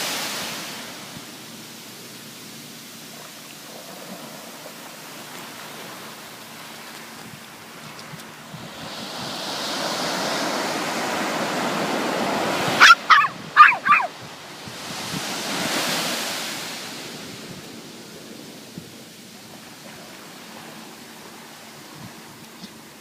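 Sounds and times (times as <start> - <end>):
waves washing in: 0.0 - 23.0
animal crying: 12.8 - 14.1.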